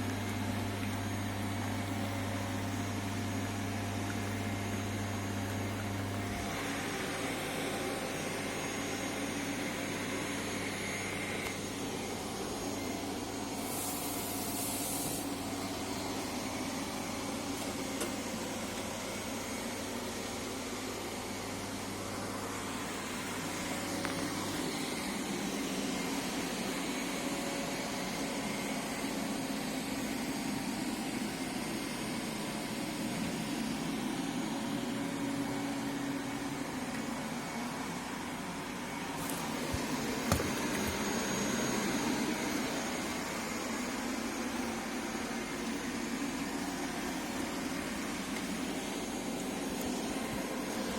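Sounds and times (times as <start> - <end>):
robot vacuum whirring: 5.2 - 16.7, 38.9 - 50.9.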